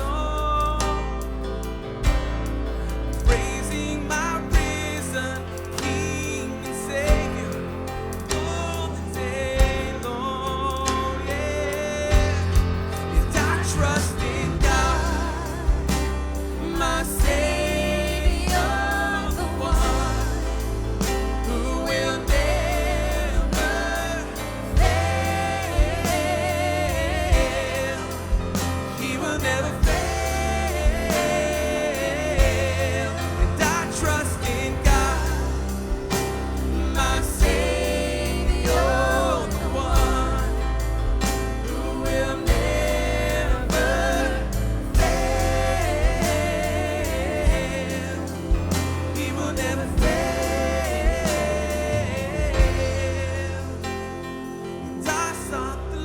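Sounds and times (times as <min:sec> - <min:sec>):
live worship band music: 0:00.0 - 0:56.0
drum hits: 0:12.1 - 0:53.3.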